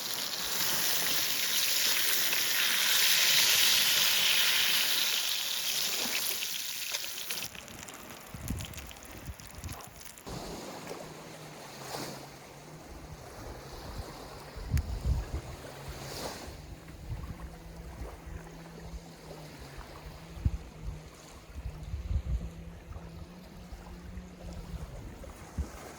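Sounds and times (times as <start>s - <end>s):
frying sizzle: 0.0s - 10.3s
water sounds: 0.0s - 25.9s
wind buffeting microphone: 8.2s - 10.0s, 13.0s - 19.0s, 19.7s - 25.9s
low motor hum: 10.7s - 25.9s.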